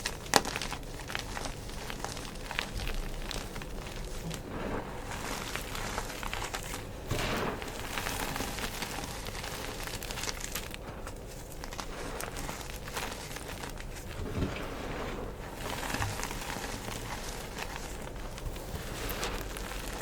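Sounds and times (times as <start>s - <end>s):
chalk crumbling crackle: 0.0s - 20.0s.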